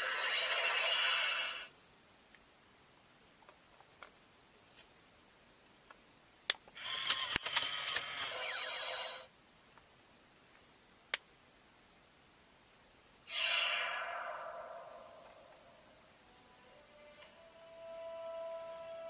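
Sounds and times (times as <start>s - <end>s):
toy electronic sound effect: 0.0s - 1.7s, 8.2s - 9.3s, 13.3s - 15.0s
toy mechanism clicking: 6.8s - 8.3s.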